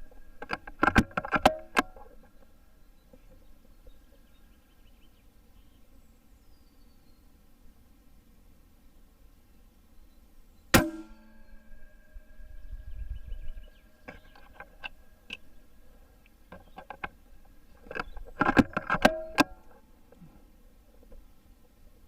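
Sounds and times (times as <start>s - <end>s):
air rifle shot with ringing: 10.7s - 12.7s, 18.9s - 19.6s.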